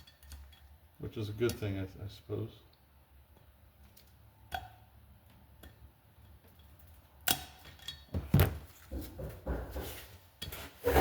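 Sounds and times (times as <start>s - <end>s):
metal tool clicks and knocks: 3.9s - 8.3s.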